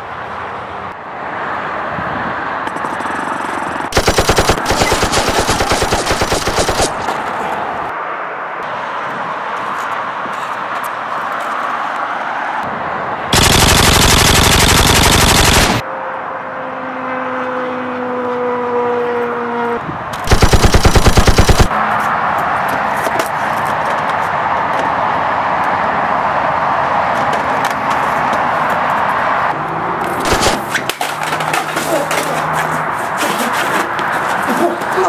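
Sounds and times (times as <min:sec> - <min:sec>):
machine-gun fire bursts: 0:03.9 - 0:07.1, 0:13.4 - 0:15.8, 0:20.2 - 0:21.7, 0:30.2 - 0:30.6.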